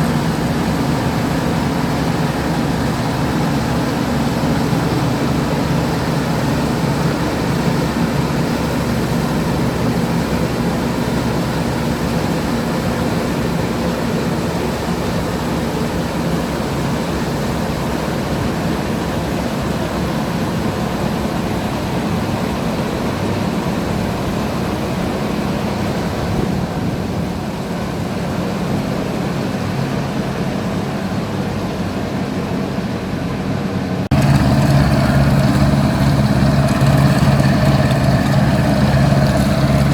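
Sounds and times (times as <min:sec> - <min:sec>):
combine harvester engine drone: 0:00.0 - 0:39.9
machinery noise: 0:34.1 - 0:39.9.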